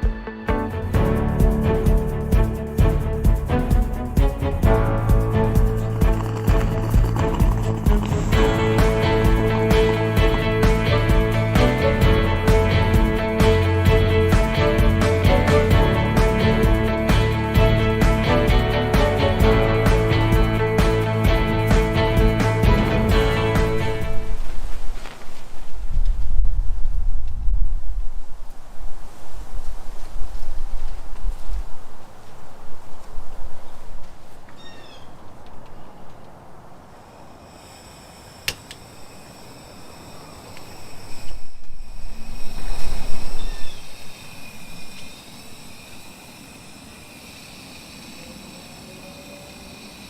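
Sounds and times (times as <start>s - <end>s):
guitar background music: 0.0s - 24.3s
wind buffeting microphone: 4.6s - 13.0s, 23.9s - 34.4s
insects trilling: 5.2s - 11.0s, 36.8s - 50.0s.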